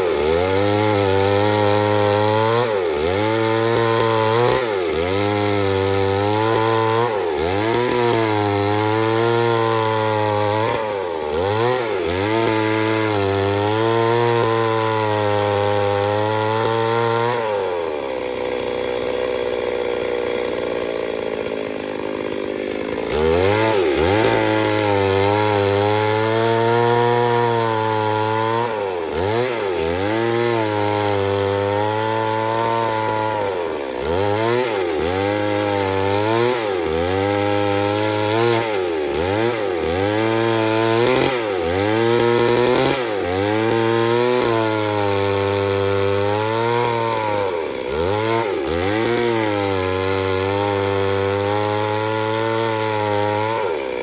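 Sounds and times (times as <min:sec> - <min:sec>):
chainsaw cutting wood: 0:00.0 - 0:54.0.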